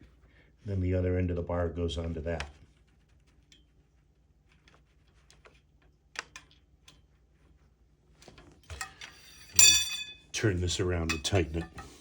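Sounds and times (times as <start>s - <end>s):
small parts clicking and tapping: 4.6s - 7.1s.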